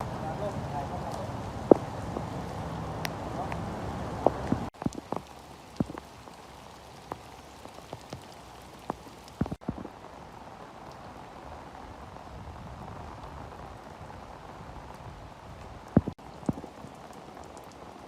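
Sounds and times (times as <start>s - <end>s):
steady rain hiss: 0.0s - 18.0s
hail striking hard surfaces: 4.2s - 9.9s, 15.9s - 18.0s.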